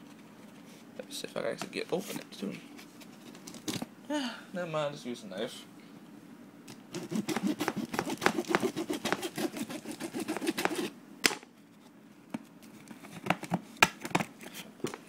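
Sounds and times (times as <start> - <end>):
knife cutting packing tape: 6.9 - 10.9.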